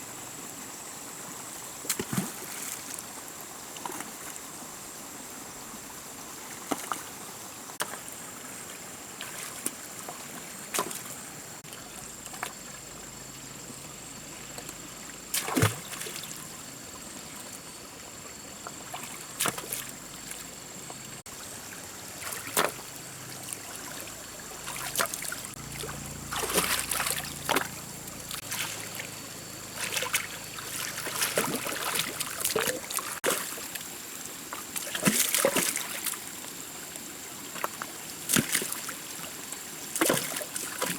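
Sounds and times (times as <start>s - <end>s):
water trickling and splashing: 1.8s - 40.9s.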